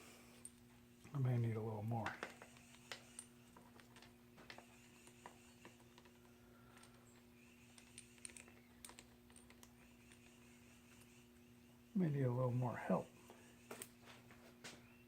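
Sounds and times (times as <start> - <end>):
steady low hum: 0.0 - 15.0
small metal parts clicking: 2.1 - 11.1.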